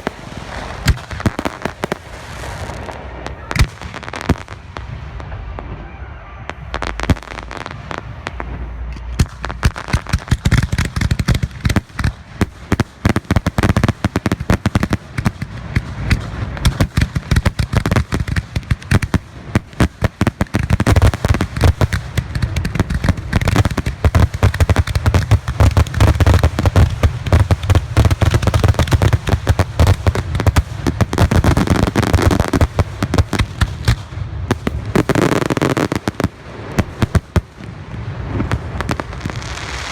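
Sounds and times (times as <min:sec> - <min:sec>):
fireworks bursting: 0:00.0 - 0:39.9
heavy low rumble: 0:04.5 - 0:10.4.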